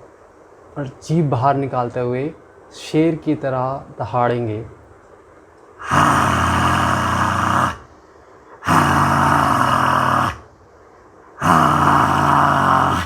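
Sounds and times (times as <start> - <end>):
man roaring exhalations: 5.8 - 10.5, 11.4 - 13.0.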